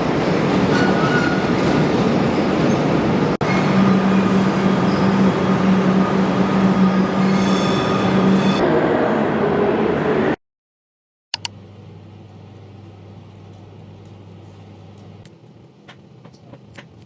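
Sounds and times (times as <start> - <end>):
train rumbling on rails: 0.0 - 10.4.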